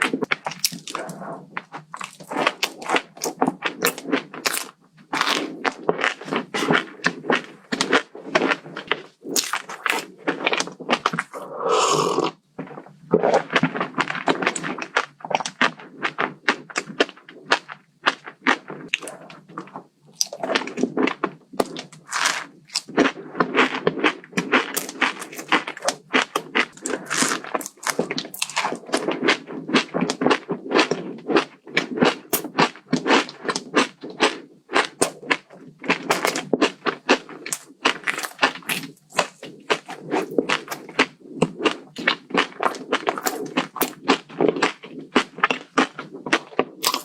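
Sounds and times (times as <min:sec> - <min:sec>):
chewing crunchy food: 0:00.0 - 0:47.0
mouth clicks: 0:11.2 - 0:12.4.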